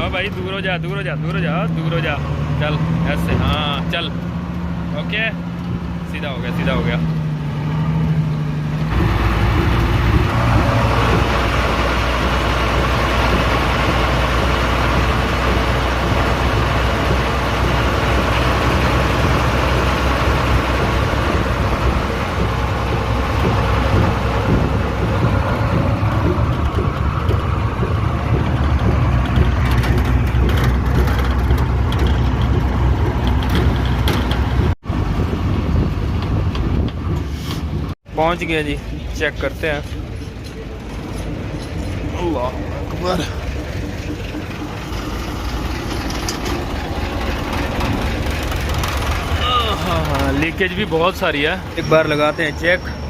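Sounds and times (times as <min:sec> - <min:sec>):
diesel truck engine drone: 0:00.0 - 0:53.0
short clicks and rattles: 0:12.2 - 0:34.8, 0:39.5 - 0:51.3.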